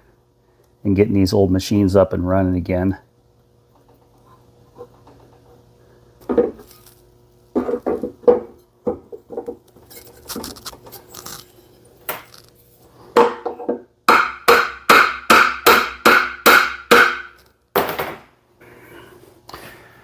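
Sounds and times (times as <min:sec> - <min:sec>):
hammer striking metal: 0:14.1 - 0:17.4.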